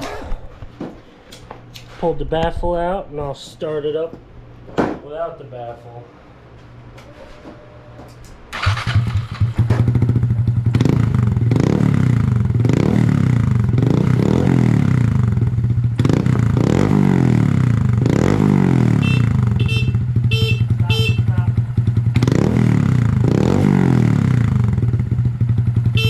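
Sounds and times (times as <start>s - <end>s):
motorcycle engine throttle blips: 7.1s - 26.0s
motorcycle engine starting: 8.5s - 26.0s.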